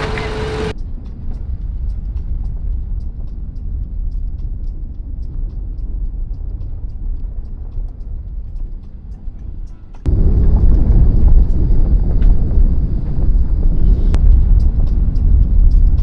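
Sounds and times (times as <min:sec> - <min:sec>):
car engine and road noise: 0:00.0 - 0:00.8
faint ticks and rattles: 0:00.0 - 0:16.0.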